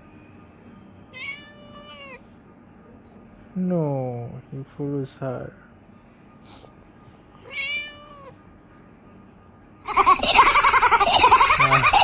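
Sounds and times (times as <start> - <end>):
cat meowing: 1.1 - 2.2, 7.4 - 8.4.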